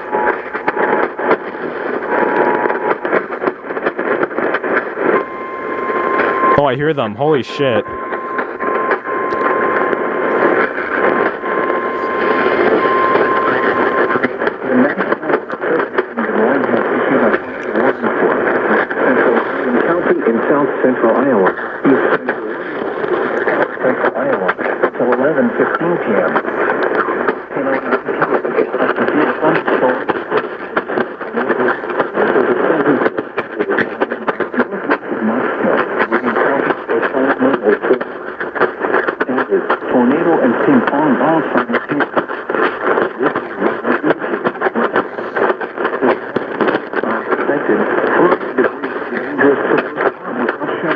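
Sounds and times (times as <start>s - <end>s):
radio static: 0.0s - 50.9s
thin steady tone: 5.2s - 14.8s.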